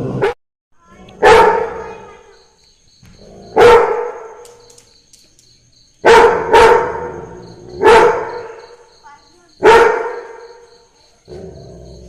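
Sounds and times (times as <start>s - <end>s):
dog barking: 1.1s - 2.1s, 3.5s - 4.4s, 6.0s - 7.2s, 7.8s - 8.8s, 9.6s - 10.6s.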